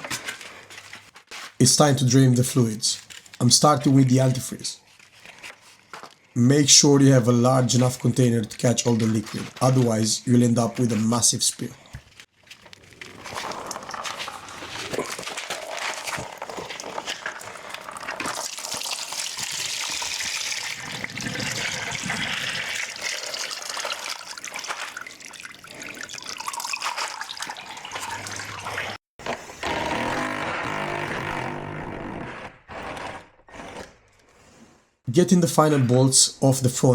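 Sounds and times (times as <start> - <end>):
liquid pouring into container: 12.9 - 29.0
mechanical whirr: 29.3 - 34.0.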